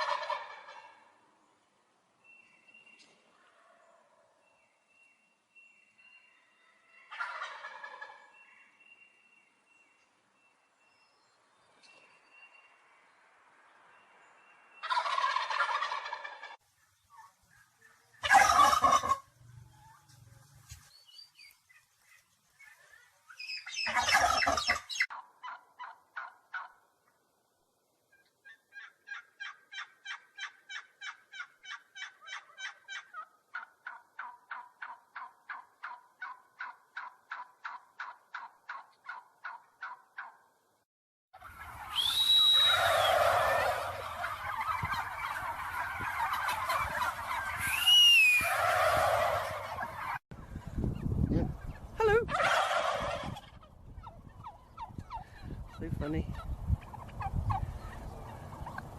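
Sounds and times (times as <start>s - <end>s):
short repeated turkey calls: 0.0s - 1.3s, 6.0s - 9.3s, 14.4s - 27.2s, 28.1s - 40.6s, 41.4s - 50.2s, 51.6s - 58.8s
turkeys gobbling: 0.0s - 1.3s, 6.5s - 8.8s, 14.8s - 26.9s, 28.1s - 40.5s, 41.4s - 58.9s.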